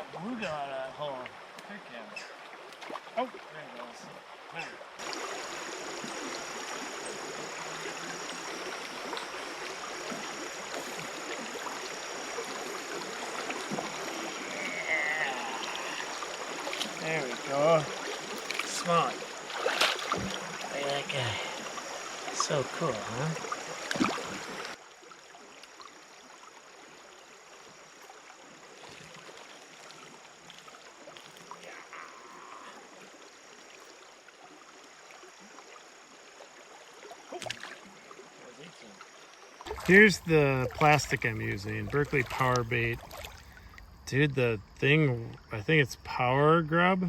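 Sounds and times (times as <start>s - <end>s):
creek water rushing: 0.0s - 47.0s.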